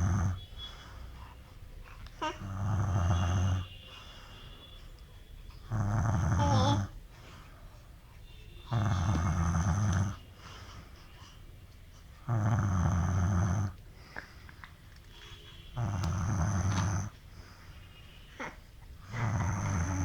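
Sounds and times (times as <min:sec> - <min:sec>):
man snoring: 0:02.4 - 0:03.6, 0:05.7 - 0:06.9, 0:08.7 - 0:10.2, 0:12.3 - 0:13.8, 0:15.8 - 0:17.1, 0:19.1 - 0:20.0.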